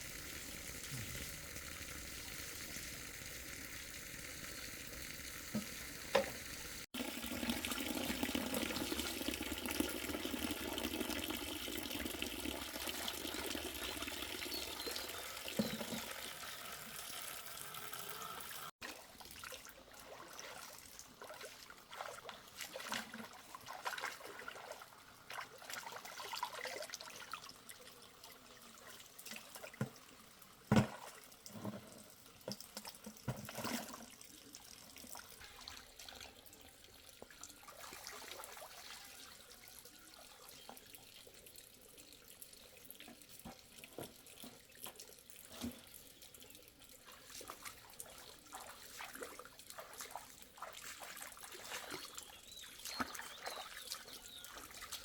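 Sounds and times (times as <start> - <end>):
water splashing and trickling: 0.0 - 55.0.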